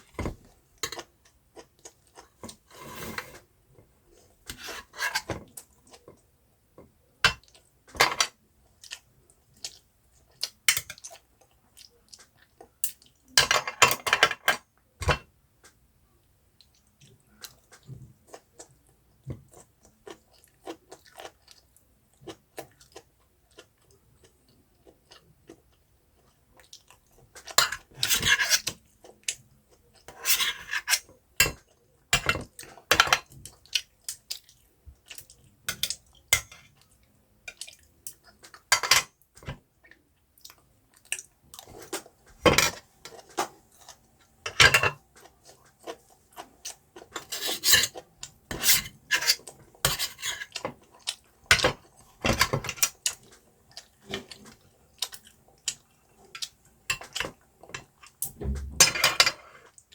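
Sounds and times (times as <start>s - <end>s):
food crunching while chewed: 0.8s - 3.0s, 8.3s - 13.4s, 16.6s - 30.2s, 45.0s - 58.3s
utensils scraping a dish: 2.6s - 3.4s, 4.5s - 5.4s, 27.6s - 28.8s, 30.1s - 31.1s, 47.2s - 50.6s.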